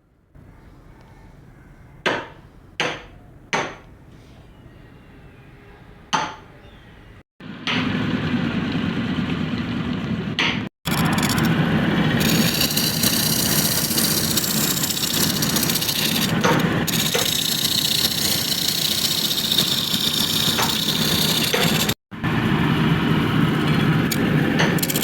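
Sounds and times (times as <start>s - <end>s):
power tool cutting wood: 12.1s - 22.0s.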